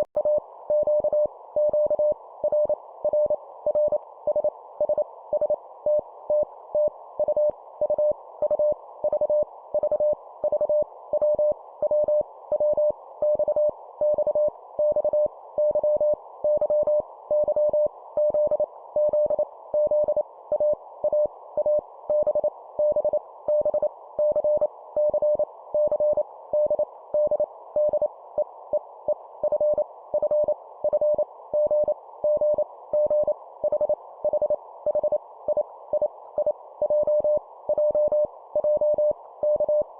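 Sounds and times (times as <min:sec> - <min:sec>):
morse code beeps: 0:36.8 - 0:39.8.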